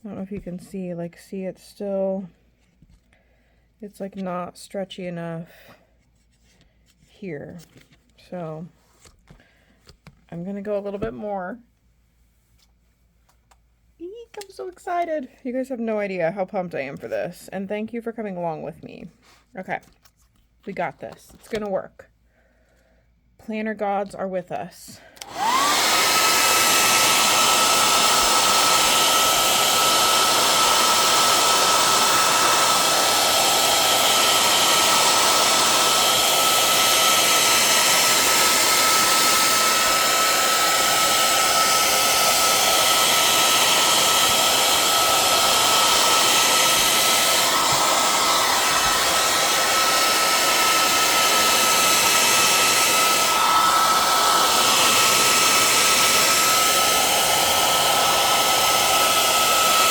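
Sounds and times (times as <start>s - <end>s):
hair dryer running: 25.2s - 59.9s.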